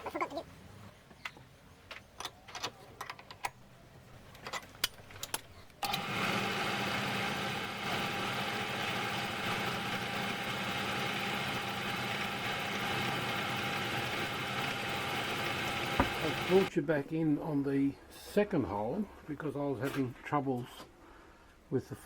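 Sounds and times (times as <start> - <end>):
tools clicking and knocking: 1.2 - 3.6, 4.2 - 5.9
mini lathe motor humming: 5.8 - 16.7.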